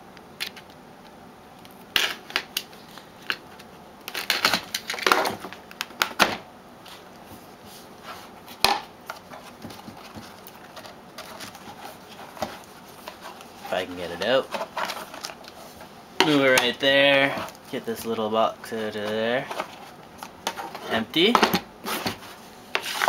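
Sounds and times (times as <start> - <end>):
packaging crackling and tearing: 4.0 - 6.0.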